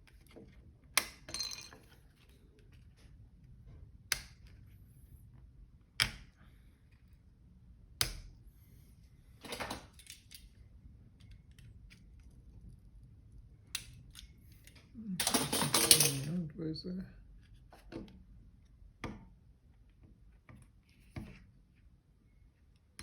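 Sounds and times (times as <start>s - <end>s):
tools clacking on a workbench: 14.6s - 16.4s.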